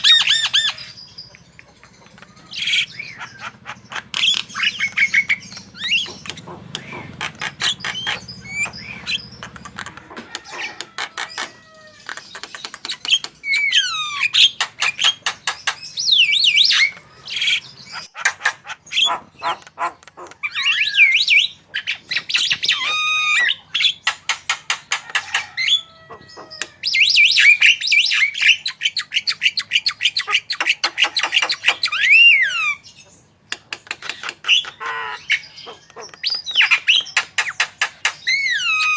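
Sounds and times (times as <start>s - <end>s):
bird singing varied song: 0.0s - 38.9s.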